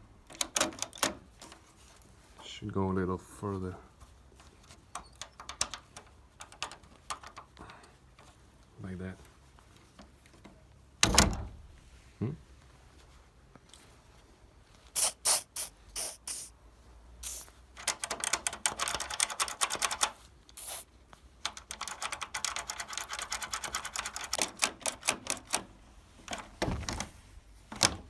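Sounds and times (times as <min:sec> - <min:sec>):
rapid mechanical clicking: 0:17.8 - 0:20.2, 0:21.4 - 0:25.7.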